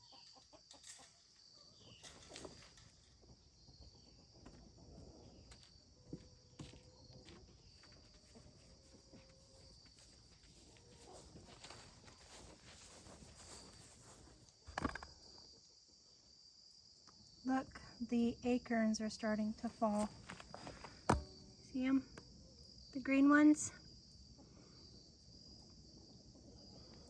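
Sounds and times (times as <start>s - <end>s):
footsteps: 5.4s - 14.6s, 19.7s - 21.3s.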